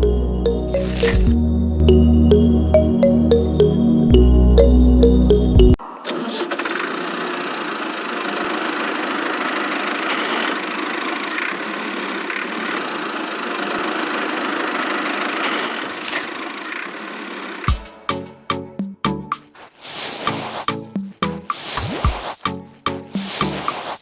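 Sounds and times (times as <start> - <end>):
small engine running with fine rattle: 6.4 - 17.8.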